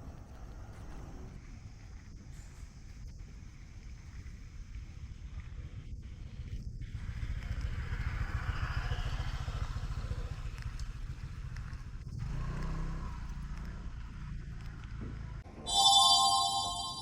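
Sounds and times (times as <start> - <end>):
engine hum: 5.2 - 15.4
vehicle passing with engine rumble: 6.7 - 15.4.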